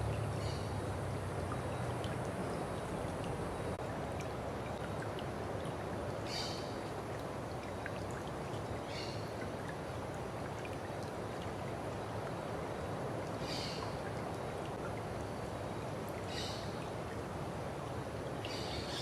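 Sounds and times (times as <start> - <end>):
stream water flowing: 0.0 - 19.0.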